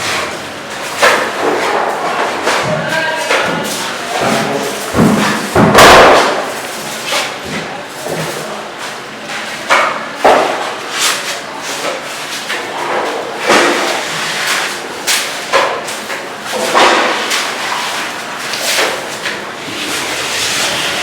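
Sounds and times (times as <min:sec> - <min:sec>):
building work thuds and knocks: 0:01.0 - 0:06.6.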